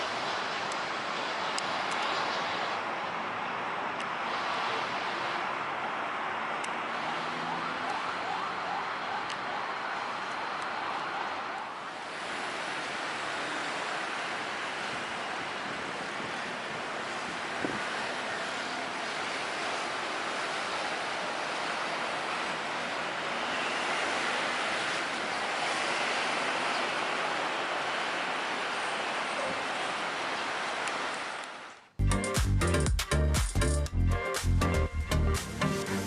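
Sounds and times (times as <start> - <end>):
jet engines roaring: 0.0 - 31.6.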